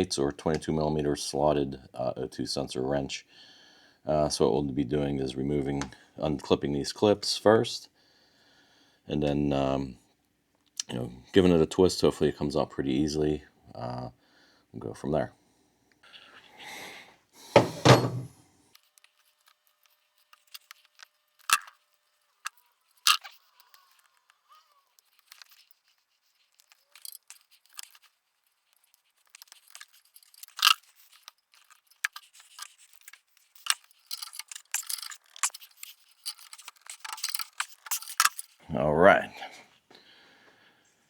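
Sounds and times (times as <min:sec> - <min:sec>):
sharp knocks: 0:17.6 - 0:18.3
hand tools clicking and clinking: 0:26.5 - 0:28.0, 0:29.2 - 0:38.6.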